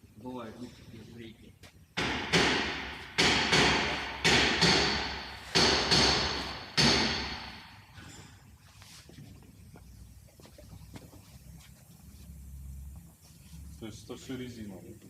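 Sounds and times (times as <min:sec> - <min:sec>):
sharp metallic knocks: 0:02.0 - 0:07.9.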